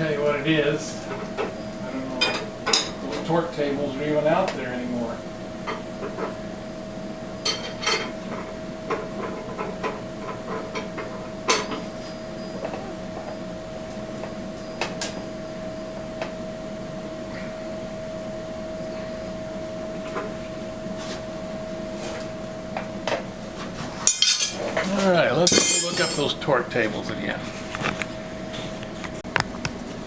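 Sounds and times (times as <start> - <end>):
steady high-pitched hum: 0.0 - 30.0
hand tools clicking on metal parts: 25.4 - 26.3.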